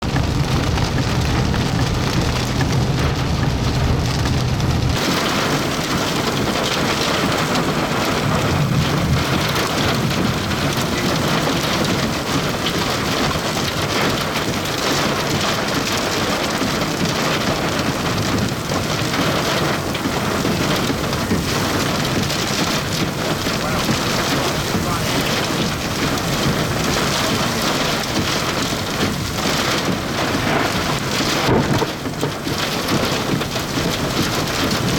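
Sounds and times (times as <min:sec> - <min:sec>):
low rumble: 0:00.0 - 0:05.0
heavy rain patter: 0:00.0 - 0:34.9.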